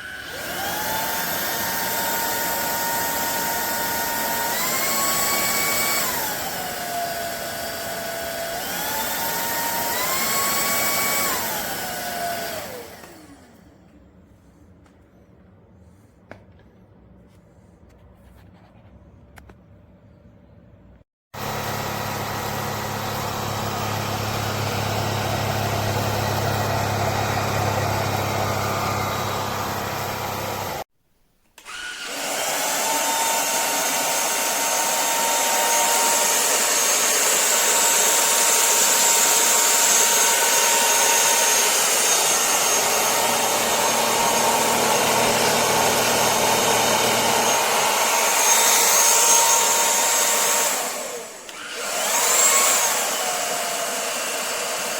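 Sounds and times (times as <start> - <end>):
stick vacuum running: 0.0 - 13.8, 21.4 - 30.9, 31.6 - 54.9.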